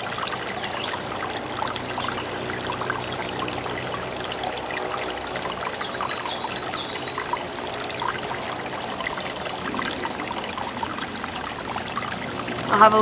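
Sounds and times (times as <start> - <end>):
creek water trickling: 0.0 - 13.0
bird chirping: 5.4 - 12.7.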